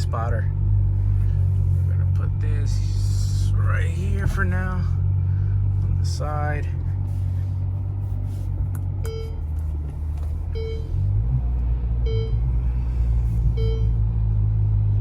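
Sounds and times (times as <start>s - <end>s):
sports car engine droning: 0.0s - 15.0s
in-car warning chime: 9.0s - 9.5s, 10.5s - 11.1s, 12.0s - 12.5s, 13.5s - 14.0s.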